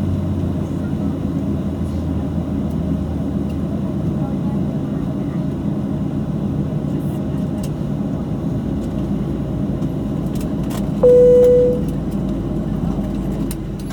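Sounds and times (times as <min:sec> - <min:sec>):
aircraft cabin rumble: 0:07.8 - 0:13.9
cabin chime: 0:11.0 - 0:11.9.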